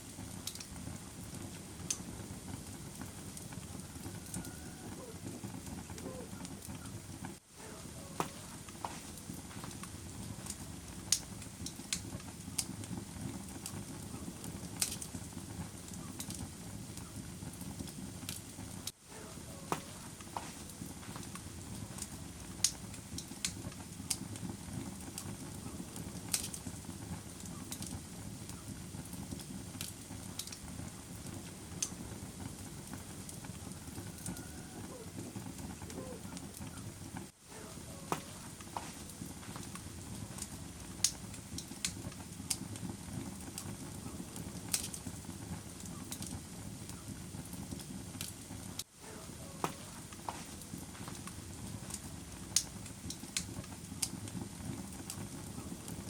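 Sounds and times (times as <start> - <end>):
fire burning rumble: 0.0 - 56.0
wood fire pops and snaps: 0.0 - 56.0.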